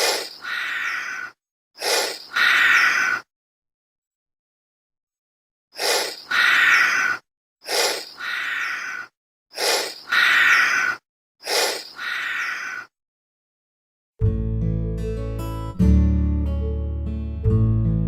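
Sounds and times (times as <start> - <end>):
gasping breaths and exhales: 0.0 - 3.3, 5.8 - 12.8.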